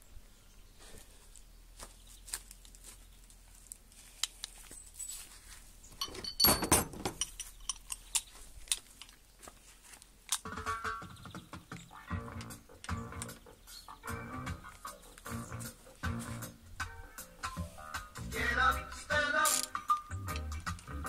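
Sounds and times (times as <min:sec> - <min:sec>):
loud clattering clinks: 0:06.0 - 0:07.9
small metal clicks and clinks: 0:06.0 - 0:09.2, 0:19.4 - 0:20.8.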